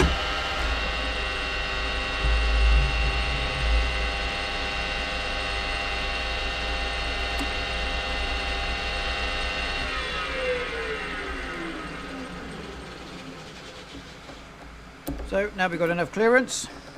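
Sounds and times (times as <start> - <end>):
metal lathe whining: 0.0 - 15.0
low knocks: 2.0 - 5.3.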